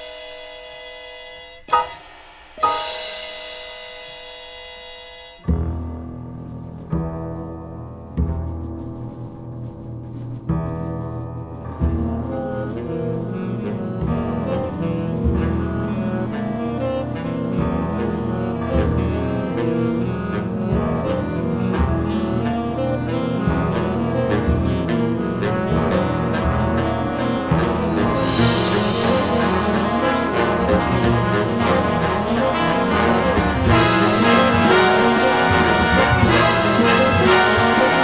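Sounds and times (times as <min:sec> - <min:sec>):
jazz orchestra music: 0:00.0 - 0:38.0
prominent bass line: 0:11.8 - 0:38.0.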